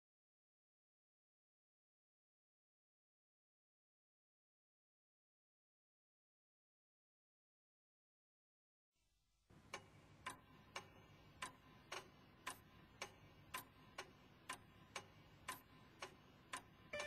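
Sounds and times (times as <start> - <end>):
faint steady ticking: 9.5 - 17.0.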